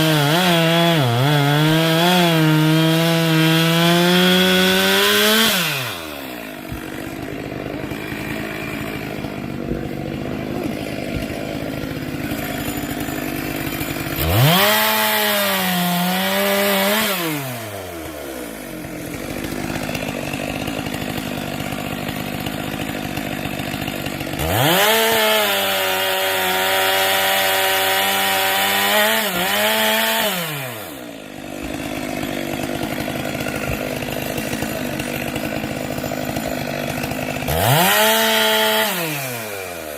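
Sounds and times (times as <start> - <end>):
chainsaw revving and cutting wood: 0.0 - 39.9.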